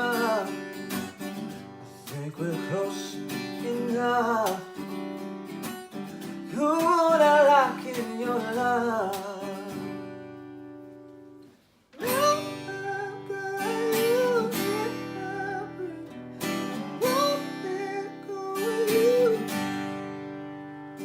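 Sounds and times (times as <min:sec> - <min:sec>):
strummed acoustic guitar: 0:00.0 - 0:21.0
person singing wordless melody: 0:01.8 - 0:04.7, 0:06.5 - 0:10.1, 0:12.0 - 0:19.6.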